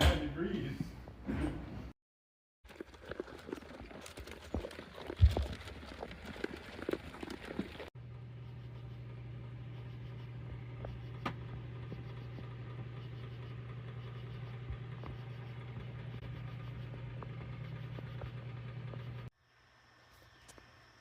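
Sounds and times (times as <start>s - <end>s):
low mechanical hum: 7.5s - 21.0s.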